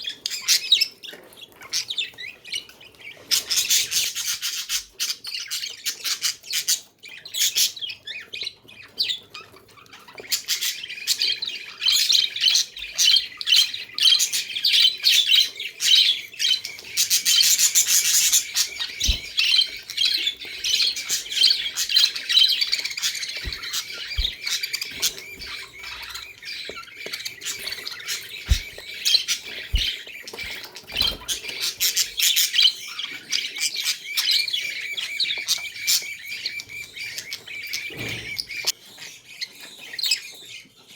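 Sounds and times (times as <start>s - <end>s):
budgies chirping: 0.0s - 40.9s
soft low thumps: 19.0s - 19.4s, 23.4s - 26.1s, 28.5s - 28.9s, 29.7s - 30.6s.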